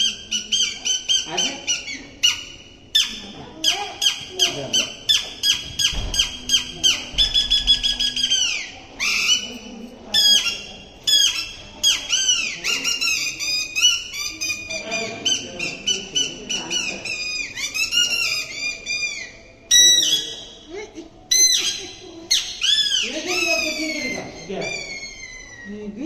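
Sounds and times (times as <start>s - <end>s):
shrill squeaky mouth whistle chirps: 4.8s - 9.6s, 15.6s - 20.6s, 22.4s - 25.7s.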